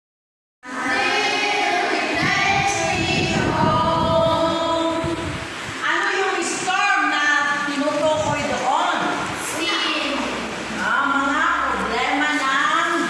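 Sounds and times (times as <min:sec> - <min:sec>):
amplified karaoke singing: 0:00.7 - 0:05.6.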